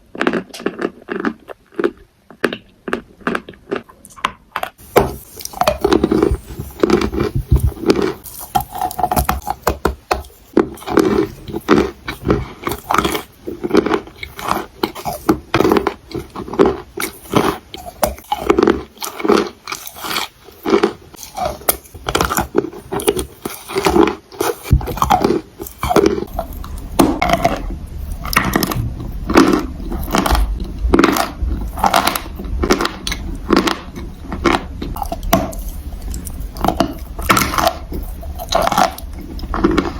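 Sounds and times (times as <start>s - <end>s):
crunchy food chewing: 0.0s - 39.9s
low rumble: 26.3s - 35.0s.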